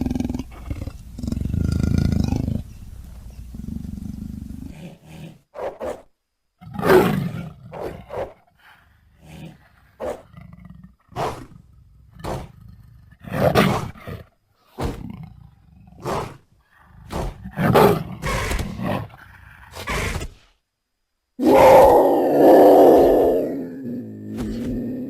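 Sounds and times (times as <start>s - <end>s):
creature calls: 18.2s - 19.1s, 21.4s - 25.0s.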